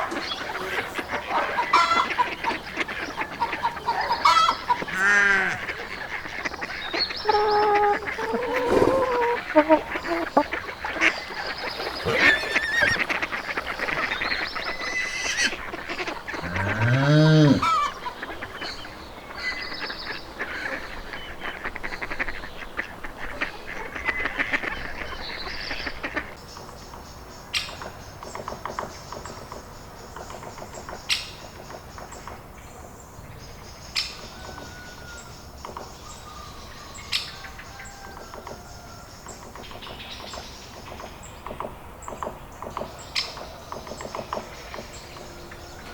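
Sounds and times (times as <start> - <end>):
low drawn-out bird call: 0.0 - 18.1
geese honking: 0.0 - 18.6
ducks quacking: 0.0 - 18.8.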